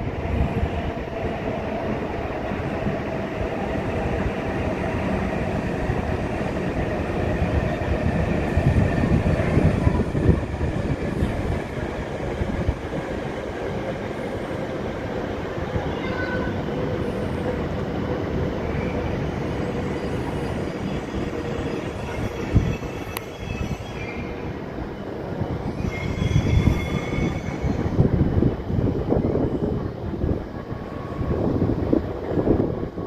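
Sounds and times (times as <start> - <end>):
train rumbling on rails: 0.0 - 33.0
high wheel squeals: 25.8 - 27.9.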